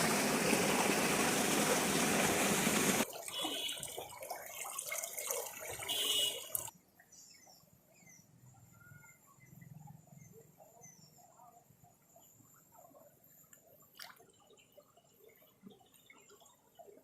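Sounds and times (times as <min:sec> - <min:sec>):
high-pressure water gushing: 0:00.0 - 0:06.7.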